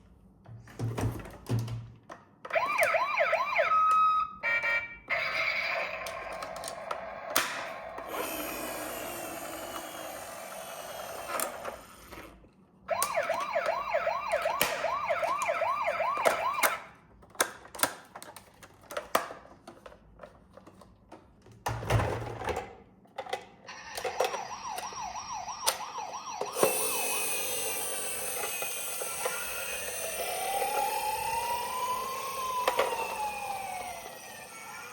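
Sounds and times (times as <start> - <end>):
toy electronic sirens: 2.5 - 12.0, 12.9 - 16.9, 23.7 - 34.9.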